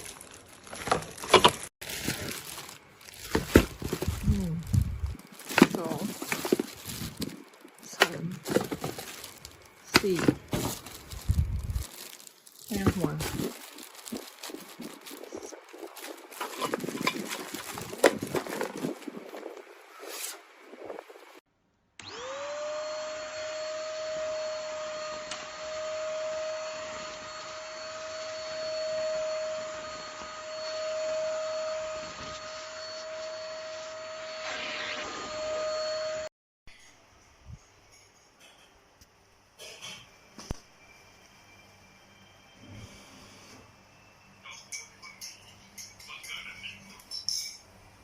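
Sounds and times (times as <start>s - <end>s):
vacuum cleaner motor whining: 0.7s - 12.1s, 12.7s - 19.6s, 22.0s - 36.3s.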